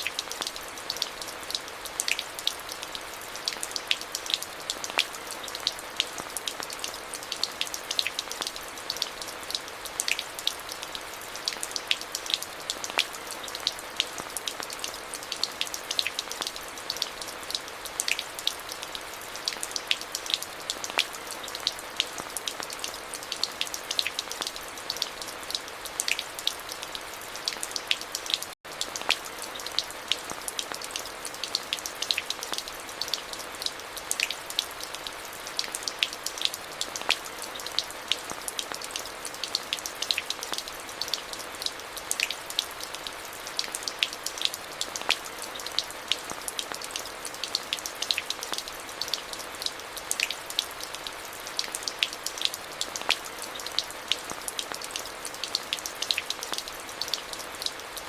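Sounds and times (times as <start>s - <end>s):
steady rain hiss: 0.0s - 58.0s
raindrop ticks: 0.1s - 43.0s.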